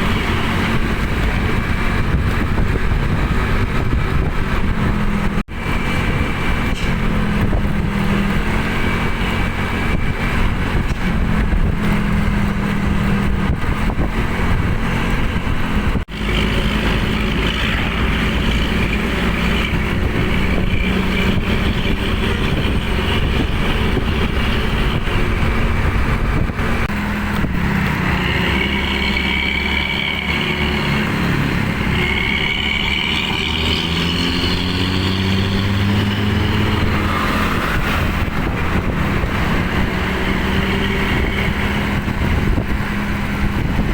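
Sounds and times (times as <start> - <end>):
diesel engine droning: 0.0 - 43.9
engine revving whine: 0.0 - 43.9.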